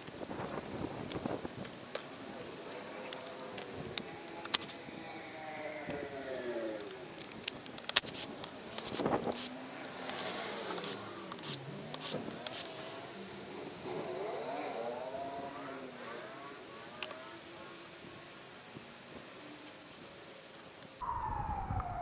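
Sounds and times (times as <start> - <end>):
faint wavering pitched sound: 21.0 - 22.0.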